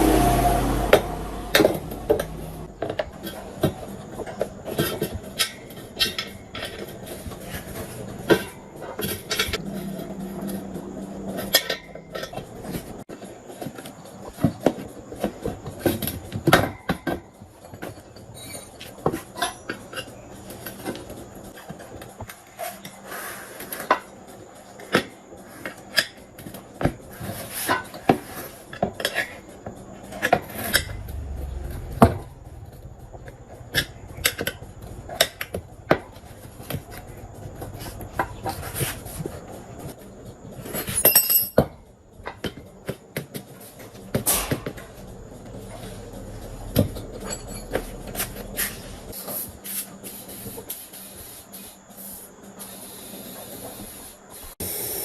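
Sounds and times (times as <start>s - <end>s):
metal tools clinking: 40.6s - 41.7s, 46.7s - 49.1s
metal parts rattling: 40.7s - 41.7s, 46.6s - 49.2s.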